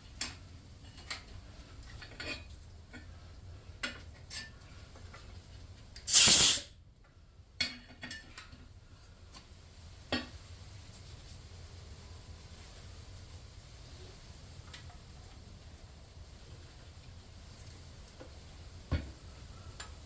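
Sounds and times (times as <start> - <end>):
metal tools clinking: 6.1 - 6.6
short loud hiss: 6.1 - 6.7.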